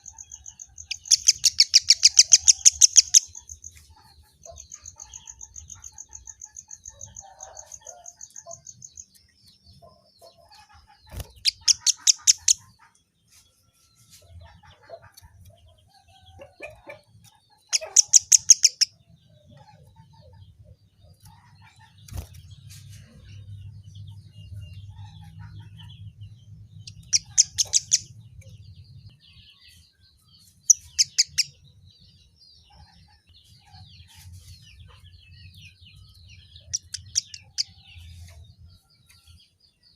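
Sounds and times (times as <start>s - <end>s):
fast steady bird trill: 0.0s - 9.2s, 9.8s - 12.9s, 14.8s - 22.2s, 26.8s - 28.5s, 30.6s - 31.6s, 36.4s - 38.4s
soft bird chirps: 0.0s - 39.9s.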